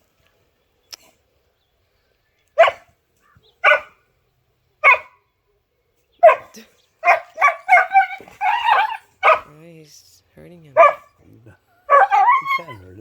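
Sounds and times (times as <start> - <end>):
dog barking: 2.6 - 2.9, 3.6 - 4.0, 4.8 - 5.2, 6.2 - 9.5, 10.8 - 11.1, 11.9 - 12.9.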